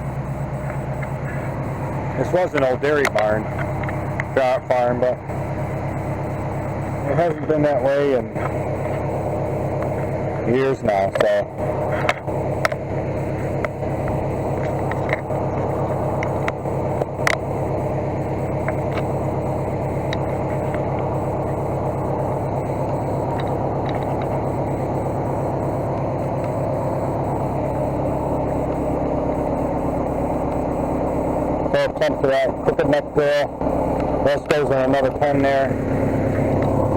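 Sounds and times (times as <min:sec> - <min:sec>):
engine running steadily: 0:00.0 - 0:36.9
sharp clicks and knocks: 0:02.5 - 0:04.4, 0:11.1 - 0:12.8, 0:13.4 - 0:17.5, 0:18.6 - 0:19.2, 0:20.0 - 0:26.6.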